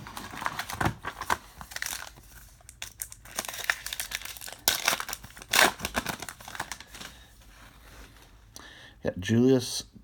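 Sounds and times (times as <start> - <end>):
wrapper crinkling: 0.0 - 7.3.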